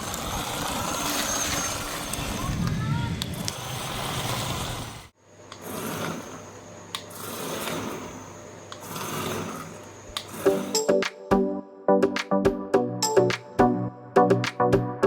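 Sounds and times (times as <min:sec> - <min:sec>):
small gear motors whirring: 0:00.0 - 0:02.6, 0:03.2 - 0:10.9.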